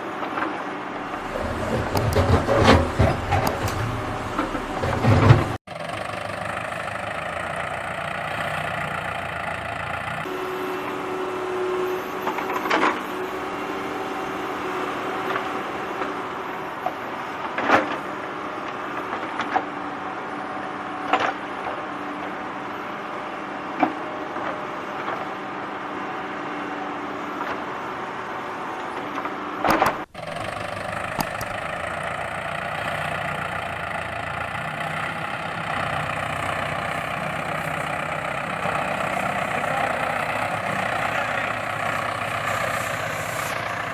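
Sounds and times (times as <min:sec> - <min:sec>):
sharp clicks and knocks: 0:01.2 - 0:05.6, 0:29.6 - 0:31.7.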